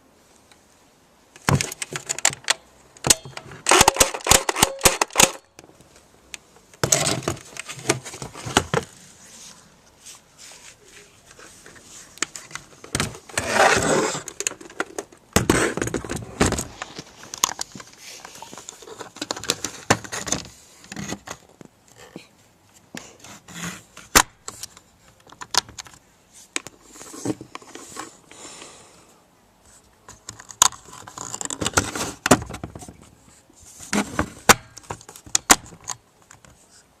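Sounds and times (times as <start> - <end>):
bb gun rattling and scraping: 1.4 - 5.5, 6.8 - 9.0, 11.3 - 21.4.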